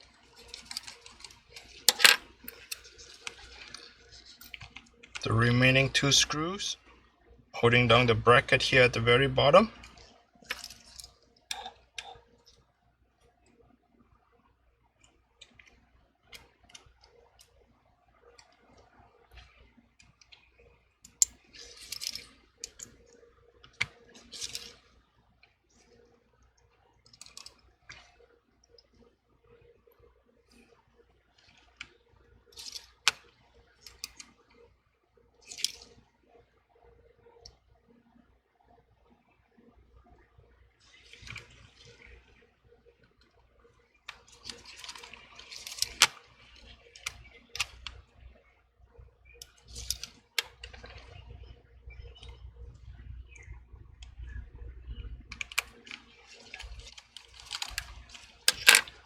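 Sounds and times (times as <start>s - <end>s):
small clicks and taps of tools: 26.6s - 29.0s.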